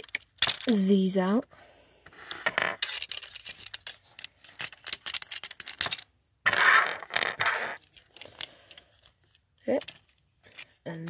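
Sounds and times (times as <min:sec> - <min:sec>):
clattering handling noise: 0:00.0 - 0:00.8, 0:02.3 - 0:10.9
plastic toy clicks and rattles: 0:00.0 - 0:00.8, 0:02.7 - 0:06.1.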